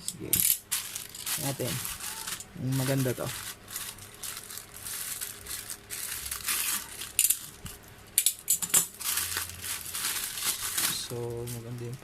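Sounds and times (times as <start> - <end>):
packaging crinkling: 0.5 - 7.8, 8.9 - 12.0.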